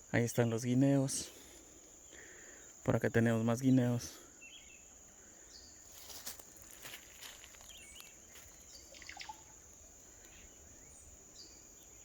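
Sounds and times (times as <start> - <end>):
bird chirps: 3.6 - 5.8, 7.6 - 12.0
high-pitched insect drone: 4.8 - 12.0.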